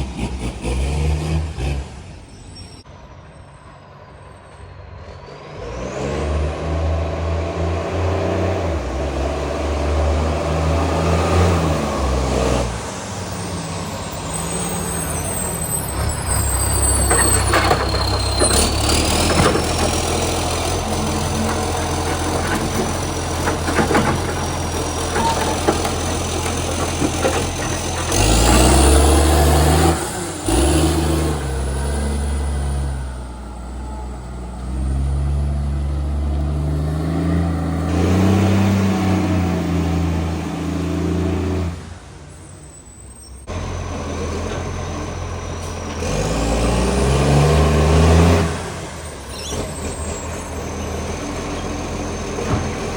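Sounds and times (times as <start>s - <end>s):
diesel engine revving: 0.0s - 3.1s, 4.8s - 52.9s
metal clanks: 14.8s - 29.0s.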